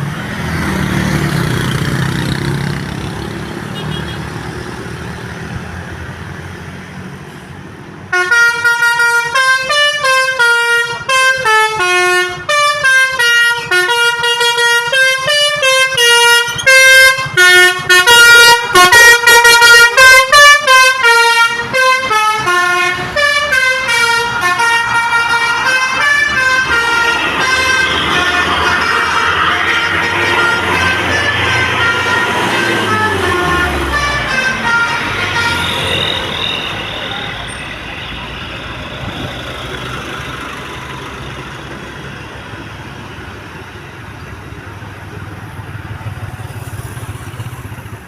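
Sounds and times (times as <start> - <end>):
multi-tone air horn melody: 8.1 - 37.1.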